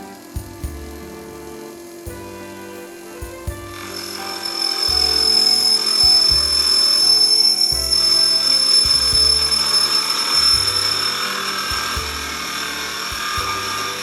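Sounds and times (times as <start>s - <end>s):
background music: 0.0s - 14.0s
lathe high whine: 3.8s - 14.0s.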